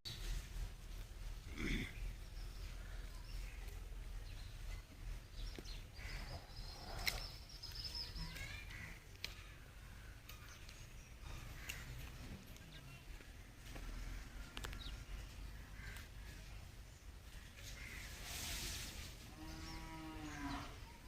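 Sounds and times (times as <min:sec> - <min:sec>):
birds chirping: 0:00.1 - 0:18.3, 0:19.3 - 0:21.0.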